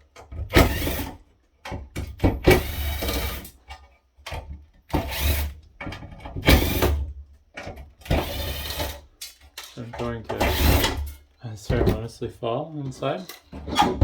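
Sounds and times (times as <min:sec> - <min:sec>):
power drill backing out screws: 0:00.5 - 0:01.1.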